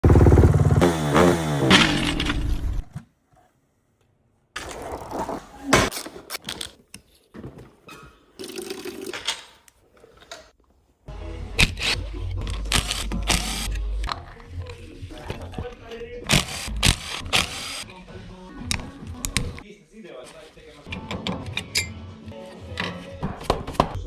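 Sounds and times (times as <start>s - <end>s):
engine revving: 0.0s - 2.9s.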